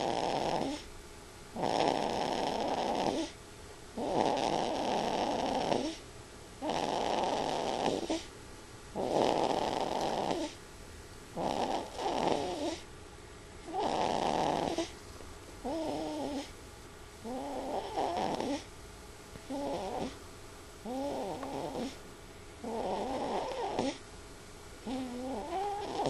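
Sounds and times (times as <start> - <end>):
person snoring: 0.0 - 0.8, 1.6 - 3.3, 4.0 - 6.0, 6.6 - 8.2, 9.0 - 10.6, 11.4 - 12.8, 13.7 - 14.9, 15.7 - 16.5, 17.2 - 18.7, 19.5 - 20.2, 20.8 - 22.0, 22.6 - 24.0, 24.8 - 26.0.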